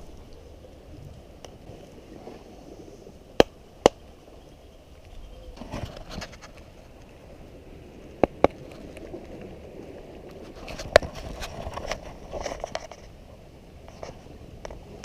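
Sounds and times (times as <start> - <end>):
light scraping: 5.5 - 7.1, 10.3 - 14.8.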